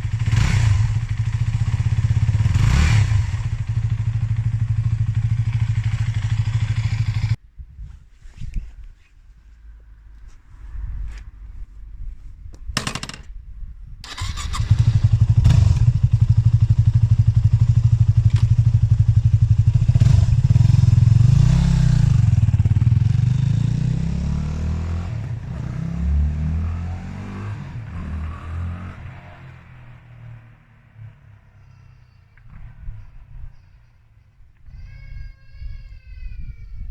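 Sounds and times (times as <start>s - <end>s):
motorcycle engine running: 0.0s - 7.4s, 14.1s - 29.8s.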